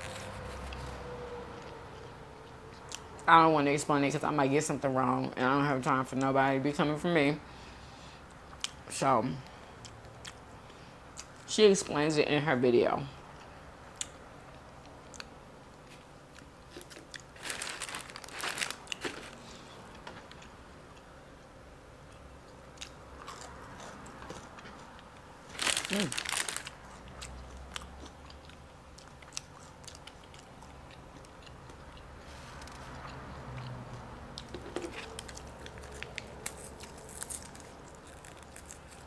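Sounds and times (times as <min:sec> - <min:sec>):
crunchy chewing: 0:15.9 - 0:21.1, 0:22.1 - 0:39.0
person chewing food: 0:22.1 - 0:39.0.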